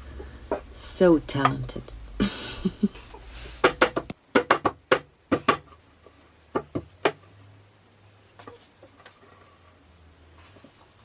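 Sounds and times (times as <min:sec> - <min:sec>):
steady hiss: 0:00.0 - 0:04.2
hammer knocking wooden dowels: 0:03.6 - 0:05.7.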